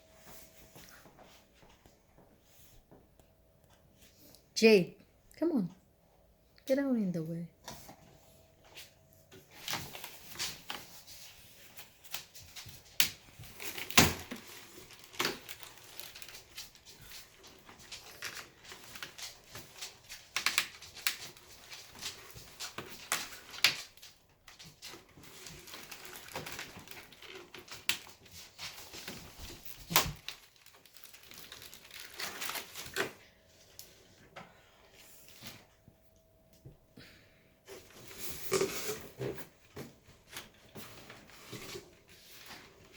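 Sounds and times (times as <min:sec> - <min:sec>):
packaging crinkling and rustling: 0:08.8 - 0:34.2, 0:37.7 - 0:42.9.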